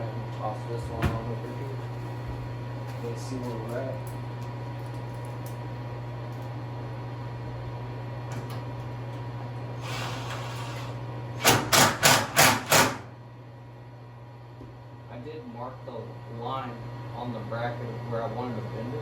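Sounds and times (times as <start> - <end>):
heater hum: 0.0 - 19.0.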